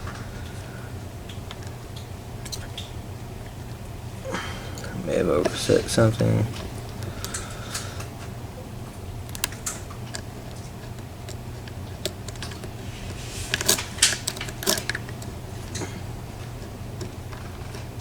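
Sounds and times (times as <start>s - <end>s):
lock picking metallic clicks: 9.3s - 10.3s, 13.6s - 15.3s.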